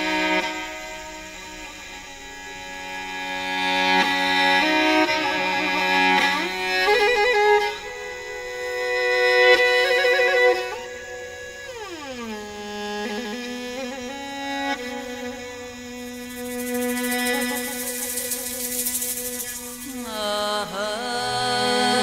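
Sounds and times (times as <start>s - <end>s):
bowed string instrument melody: 0.0s - 22.0s.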